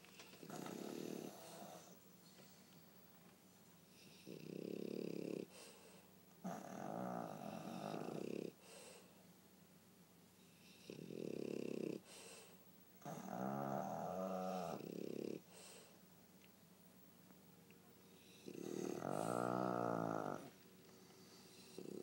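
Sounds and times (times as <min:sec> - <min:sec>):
dogs snoring: 0:00.0 - 0:02.0, 0:03.9 - 0:09.1, 0:10.4 - 0:16.0, 0:18.0 - 0:22.0.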